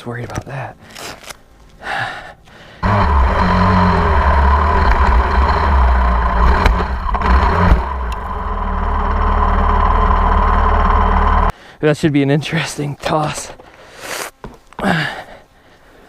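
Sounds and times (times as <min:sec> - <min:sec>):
dirt bike engine running: 0:02.8 - 0:11.5.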